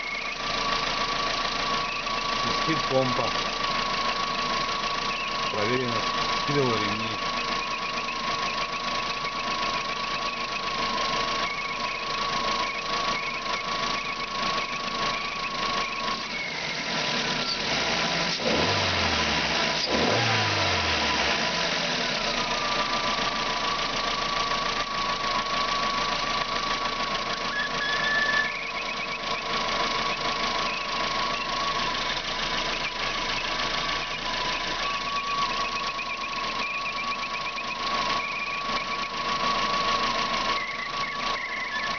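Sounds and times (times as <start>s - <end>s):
high-pitched whistle: 0.0s - 0.4s, 27.5s - 32.0s, 32.7s - 41.9s
car engine idling and revving: 0.0s - 41.9s.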